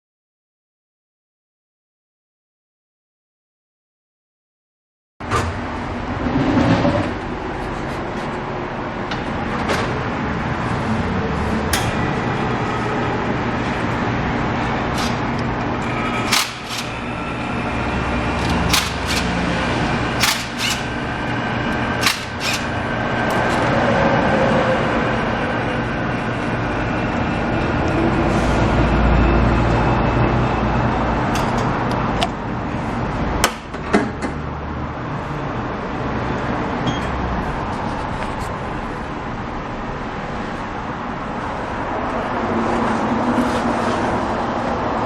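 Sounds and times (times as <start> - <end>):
machine humming: 10.0 - 24.2
sharp metallic clicks and knocks: 15.0 - 15.2, 16.3 - 17.0, 18.4 - 19.4, 20.2 - 21.0, 22.0 - 23.4.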